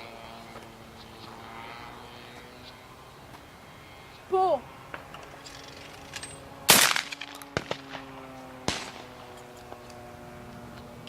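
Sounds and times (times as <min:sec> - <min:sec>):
shotgun bangs: 0:06.2 - 0:09.4.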